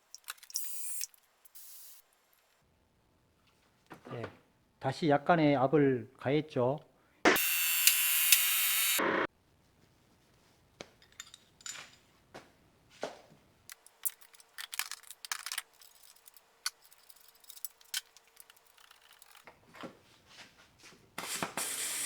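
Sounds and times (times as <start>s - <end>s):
metallic clicks of tools: 13.7s - 19.5s.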